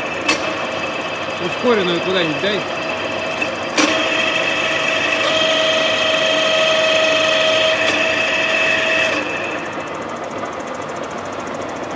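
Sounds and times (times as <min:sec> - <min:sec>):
high gear whine: 0:00.0 - 0:11.9
milling machine running: 0:00.0 - 0:11.9.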